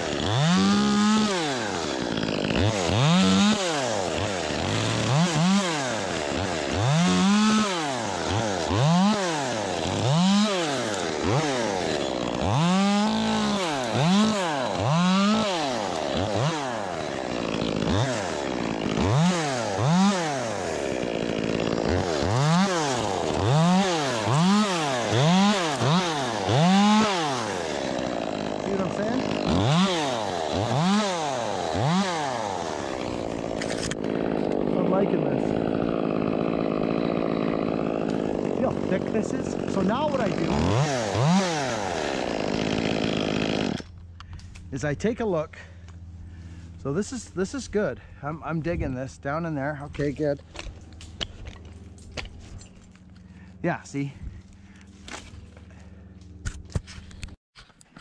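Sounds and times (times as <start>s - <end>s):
chainsaw revving: 0.0s - 44.9s.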